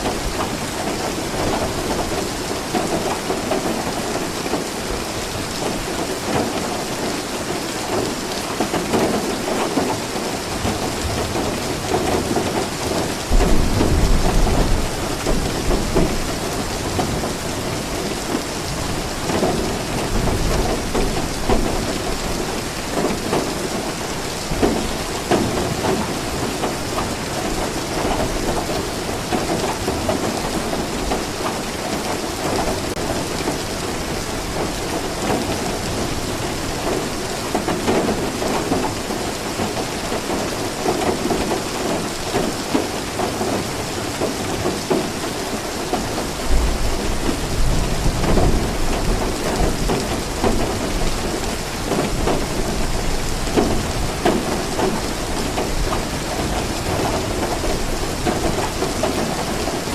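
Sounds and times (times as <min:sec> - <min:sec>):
heavy rain: 0:00.0 - 0:59.9
thunder rumbling: 0:12.5 - 0:22.4.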